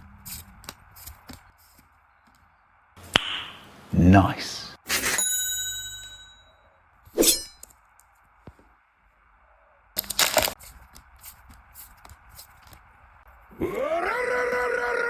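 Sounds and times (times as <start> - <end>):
foil wrapper crinkling and tearing: 10.0 - 12.7
small clicks of card handling: 10.0 - 12.8.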